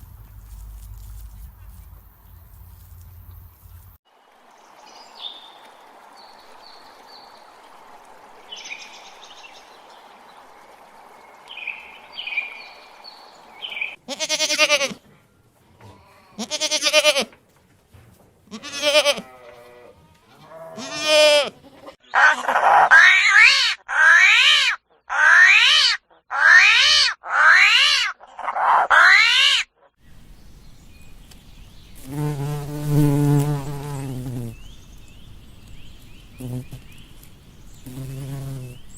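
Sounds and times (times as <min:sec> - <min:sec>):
animal calls: 0:20.6 - 0:30.0.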